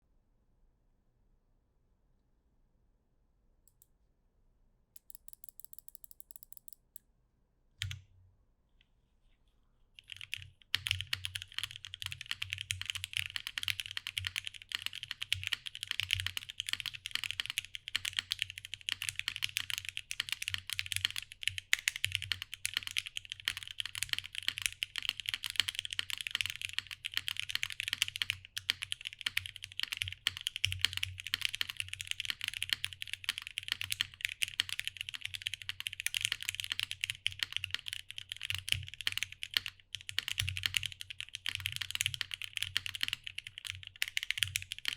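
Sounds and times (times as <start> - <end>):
fast typing on mechanical keyboard: 10.0 - 44.9.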